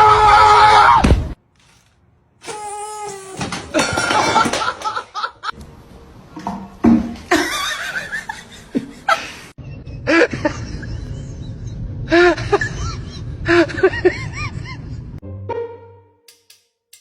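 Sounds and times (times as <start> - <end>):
people laughing: 3.7 - 5.6, 7.3 - 14.9
background music: 15.2 - 17.0.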